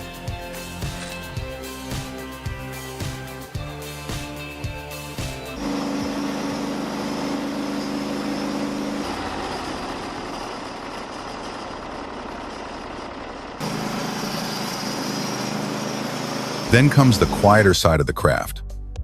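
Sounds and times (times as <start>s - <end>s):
machine engine humming: 5.0s - 17.8s.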